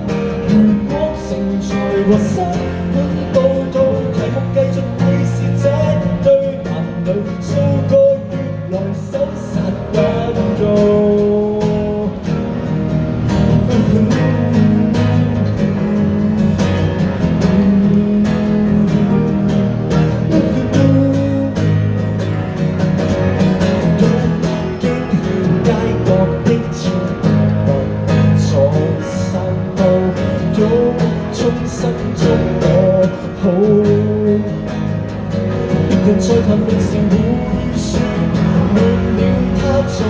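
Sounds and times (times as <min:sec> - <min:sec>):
acoustic guitars playing: 0:00.0 - 0:40.0.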